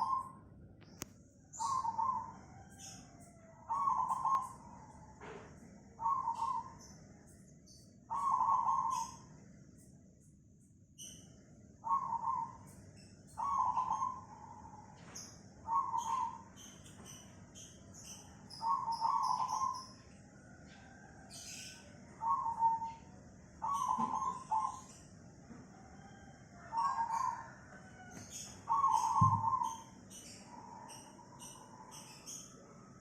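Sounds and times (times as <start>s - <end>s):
small birds chirping: 0.0s - 5.0s, 6.0s - 25.4s, 26.7s - 33.0s
dove cooing: 3.7s - 4.6s, 6.0s - 6.8s, 8.1s - 9.2s, 11.8s - 12.6s, 13.4s - 14.3s, 15.7s - 16.4s, 18.6s - 19.8s, 22.2s - 23.0s, 23.6s - 24.9s, 26.1s - 27.5s, 28.3s - 29.8s.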